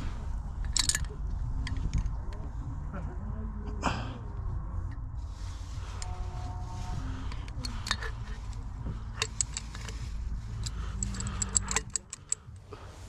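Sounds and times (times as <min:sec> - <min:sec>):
low steady rumble: 0:00.0 - 0:13.0
metal tools clinking and rattling: 0:00.6 - 0:02.4, 0:07.3 - 0:12.6.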